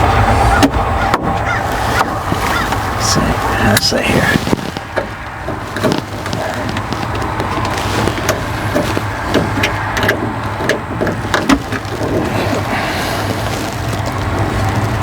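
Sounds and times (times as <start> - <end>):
low engine drone: 0.0 - 15.0
clicks and knocks on metal: 4.8 - 12.3.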